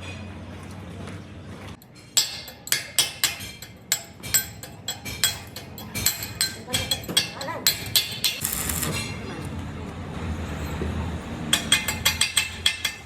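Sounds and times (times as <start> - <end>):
hammer striking steel: 1.8 - 9.2, 11.5 - 13.0.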